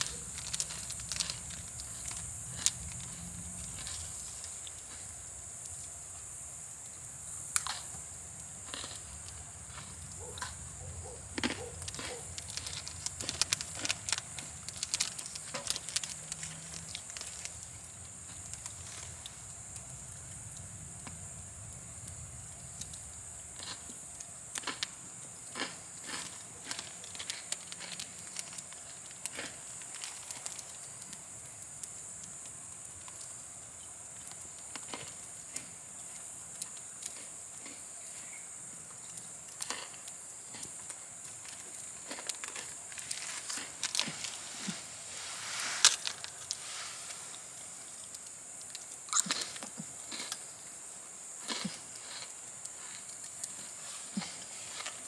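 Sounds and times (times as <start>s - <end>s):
campfire crackling and popping: 0.0s - 6.0s, 6.9s - 21.1s
high-pitched hiss: 42.8s - 51.5s.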